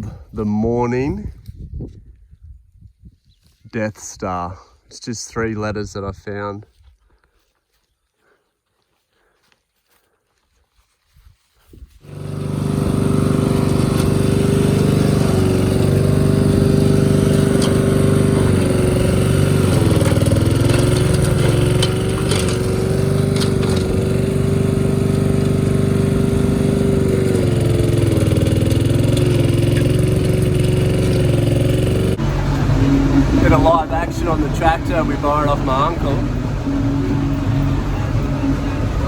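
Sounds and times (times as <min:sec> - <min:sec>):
tractor engine running: 0:12.0 - 0:39.0.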